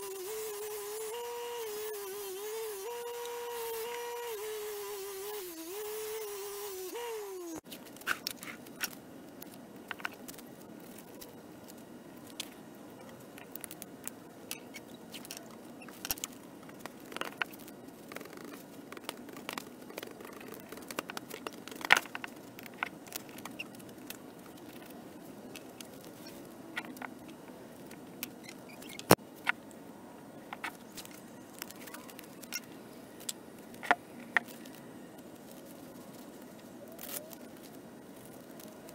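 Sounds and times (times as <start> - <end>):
small electric tool humming: 0.0 - 7.6.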